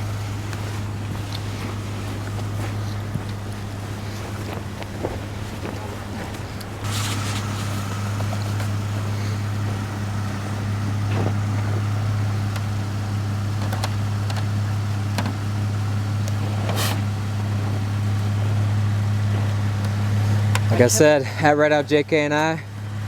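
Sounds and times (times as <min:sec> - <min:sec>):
vehicle engine idling: 0:00.0 - 0:23.0
short hiss: 0:06.8 - 0:09.6, 0:16.6 - 0:17.1.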